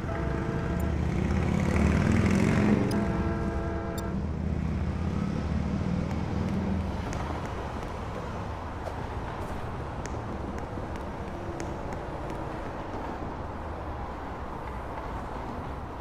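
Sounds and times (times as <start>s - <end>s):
train horn blasts: 0.0s - 1.4s, 2.6s - 4.3s
low rumble of train: 0.0s - 16.0s.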